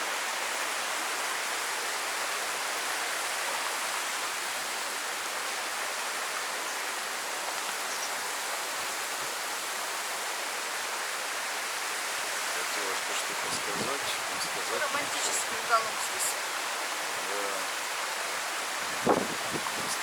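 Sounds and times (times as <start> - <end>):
waterfall rushing and splashing: 0.0 - 20.0.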